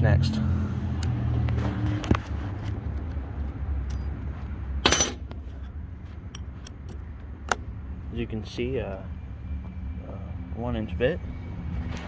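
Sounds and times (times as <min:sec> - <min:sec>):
metallic clicks and clinks: 0:04.8 - 0:05.2
short metal clatter: 0:04.8 - 0:05.3.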